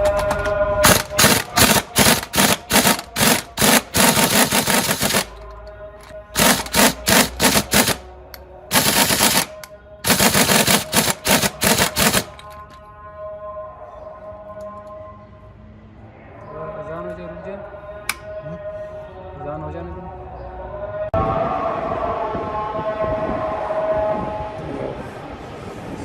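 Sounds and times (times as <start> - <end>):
impact wrench rattling bursts: 0.0 - 5.4, 6.4 - 8.0, 8.7 - 12.7.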